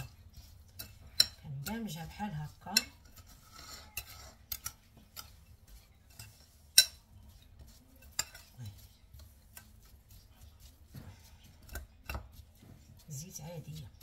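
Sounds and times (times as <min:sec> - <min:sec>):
spoon stirring mixture: 0:00.0 - 0:14.0
spoon clinking on dish: 0:00.8 - 0:01.9, 0:02.7 - 0:09.7.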